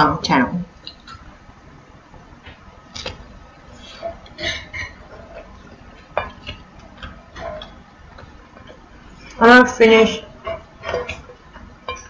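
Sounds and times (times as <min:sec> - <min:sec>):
cutlery clinking on a plate: 0:10.4 - 0:12.0.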